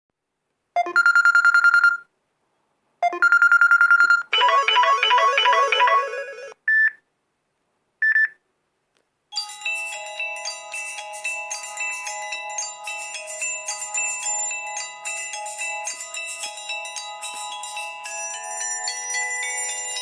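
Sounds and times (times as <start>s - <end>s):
rapidly pulsing phone tone: 3.0s - 6.6s
short bright ringtone melody: 3.0s - 6.6s.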